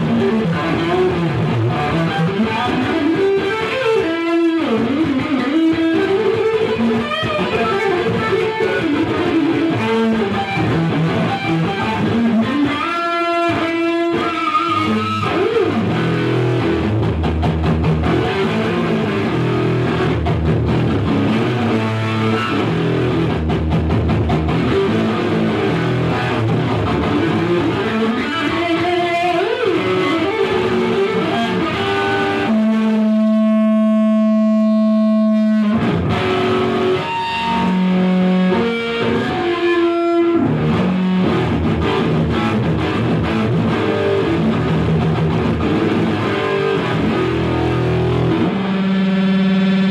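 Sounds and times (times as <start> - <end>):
electric guitar notes and chords: 0.0 - 49.9.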